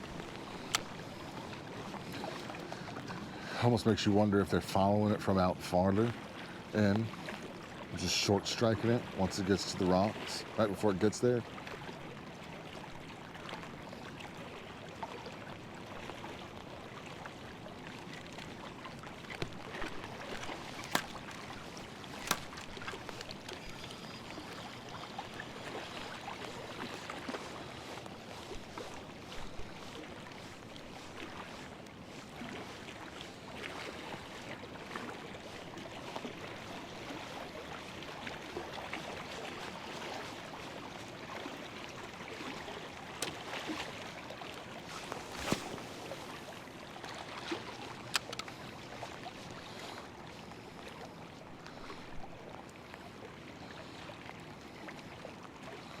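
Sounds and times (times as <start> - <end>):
small ticks: 0.4 - 1.0, 19.3 - 26.2, 48.1 - 48.6
water washing: 19.0 - 28.0
sharp clicks: 22.2 - 23.7, 48.2 - 48.5.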